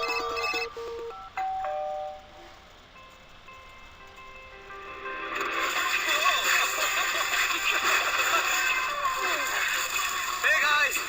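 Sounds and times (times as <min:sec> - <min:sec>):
two-tone chime: 0:00.0 - 0:02.4
soft background music: 0:00.0 - 0:09.6.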